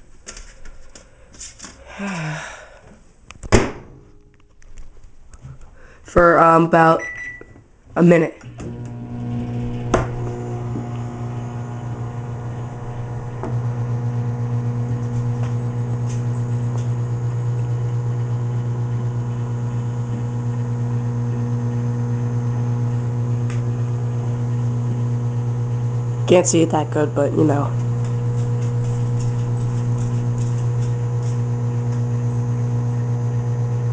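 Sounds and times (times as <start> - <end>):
microwave oven humming: 8.4 - 33.9.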